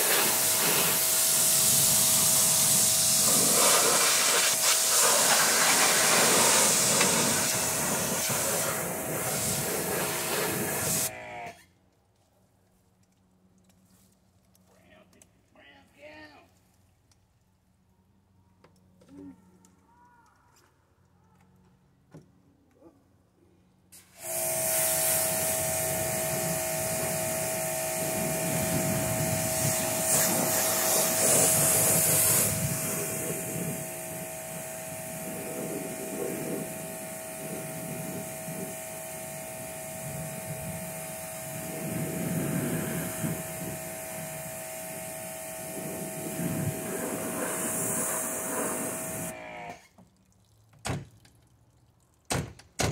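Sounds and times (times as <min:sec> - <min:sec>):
hiss of water spray: 0:00.0 - 0:11.1, 0:24.0 - 0:49.3
pressure washer motor whine: 0:00.0 - 0:11.6, 0:24.0 - 0:49.8.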